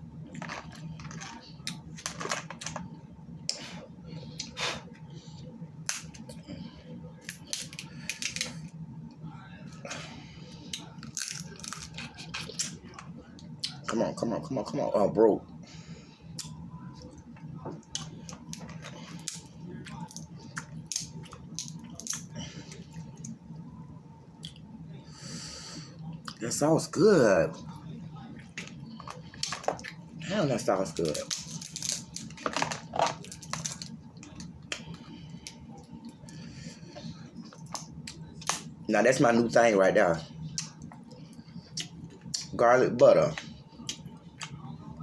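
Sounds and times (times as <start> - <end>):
crab shells cracking: 7.2 - 8.7, 11.0 - 12.8, 17.9 - 22.3, 31.0 - 36.4.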